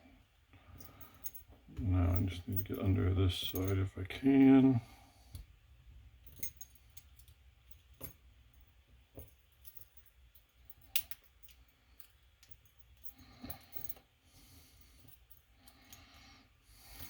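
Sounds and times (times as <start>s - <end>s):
metal tool clicks in a lock: 10.8s - 11.6s.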